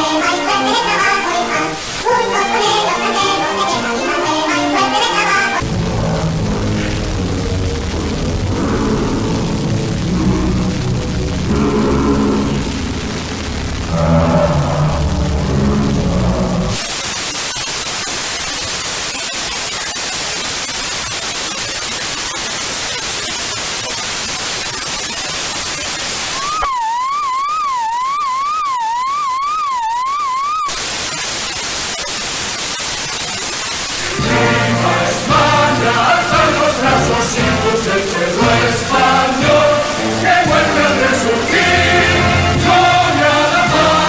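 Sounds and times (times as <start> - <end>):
music: 0.0 - 14.0, 34.0 - 44.0
static hiss: 0.0 - 44.0
low pitched sound: 5.6 - 16.8
electronic warbling tone: 5.6 - 20.1, 21.4 - 34.2.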